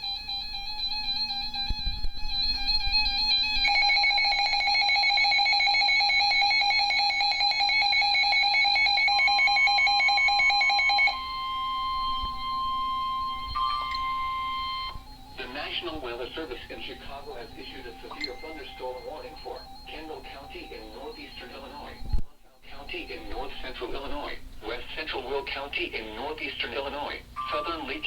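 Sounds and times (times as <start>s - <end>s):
pulsing electronic alarm: 0.0s - 24.3s
steady high warning tone: 0.0s - 28.0s.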